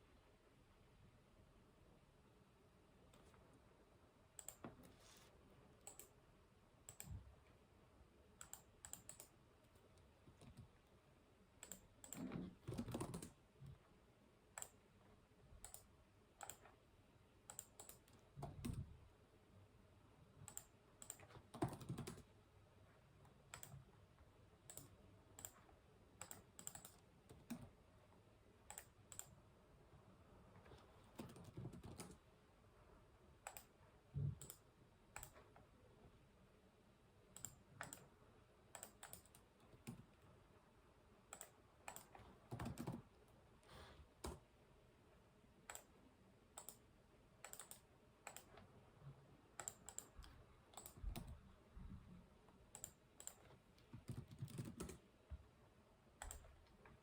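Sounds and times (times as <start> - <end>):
keyboard typing: 4.4 - 5.0, 5.8 - 6.2, 6.8 - 7.3, 8.4 - 10.8, 11.6 - 13.4, 15.6 - 16.8, 17.4 - 18.9, 20.4 - 22.3, 23.4 - 23.8, 24.6 - 27.8, 28.6 - 29.4, 31.0 - 32.2, 33.4 - 35.5, 37.3 - 38.1, 38.7 - 40.2, 41.3 - 43.2, 45.6 - 45.9, 46.6 - 48.7, 49.6 - 51.4, 52.7 - 55.1, 56.2 - 56.8
mouse clicking: 4.4 - 5.0, 5.8 - 6.2, 6.8 - 7.2, 8.4 - 10.7, 11.6 - 13.4, 14.5 - 14.8, 15.6 - 16.8, 17.4 - 18.9, 20.4 - 22.3, 23.5 - 23.8, 24.6 - 27.7, 28.6 - 29.4, 33.4 - 35.6, 37.3 - 38.1, 38.7 - 40.2, 41.3 - 43.0, 45.6 - 46.0, 46.6 - 48.7, 49.6 - 51.4, 52.7 - 55.0, 56.2 - 56.5.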